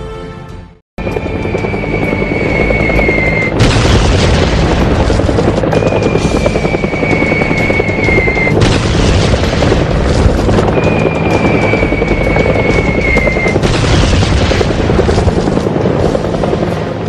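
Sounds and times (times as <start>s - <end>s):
falling whistle: 1.1s - 3.5s, 5.8s - 8.6s, 10.7s - 13.6s
battle rumble and noise: 1.1s - 17.0s
loud explosion: 3.5s - 7.2s, 8.0s - 15.4s.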